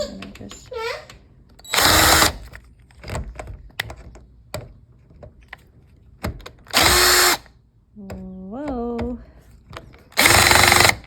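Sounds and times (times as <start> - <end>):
power drill spinning: 1.7 - 2.5, 6.7 - 7.5, 10.1 - 11.0.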